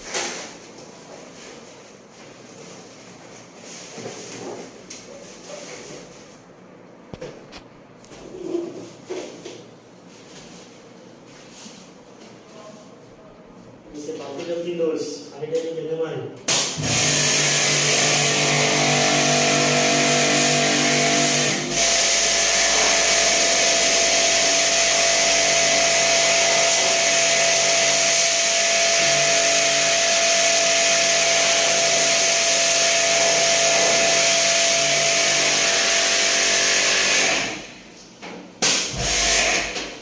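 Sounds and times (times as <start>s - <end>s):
machine hissing and humming: 16.5s - 37.8s.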